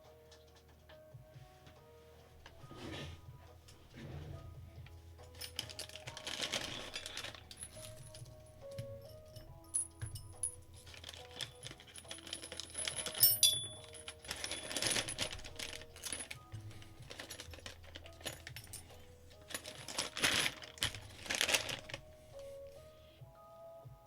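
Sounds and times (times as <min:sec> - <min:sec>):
background music: 0:00.0 - 0:24.0
metal screws clinking and rattling: 0:04.8 - 0:22.8.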